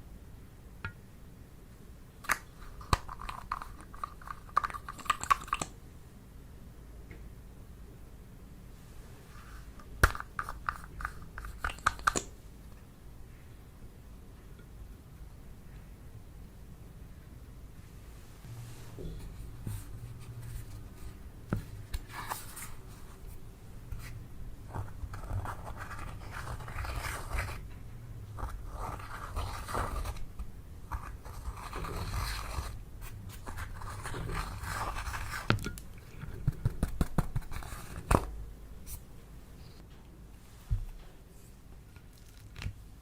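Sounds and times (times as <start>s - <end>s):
slime scraping and rustling: 24.0s - 27.7s, 28.4s - 38.3s.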